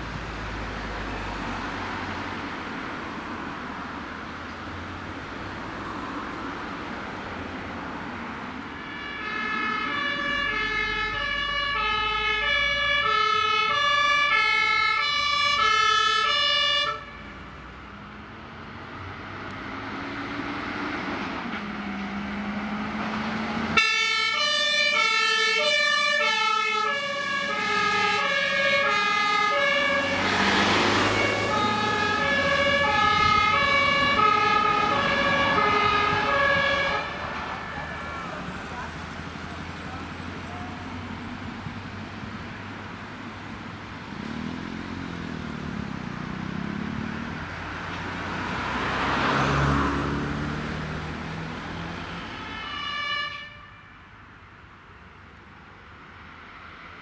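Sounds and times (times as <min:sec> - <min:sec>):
truck engine noise: 0:00.0 - 0:57.0
two-tone fire engine sirens: 0:00.5 - 0:02.5, 0:08.2 - 0:17.5, 0:21.4 - 0:41.1, 0:46.7 - 0:54.4.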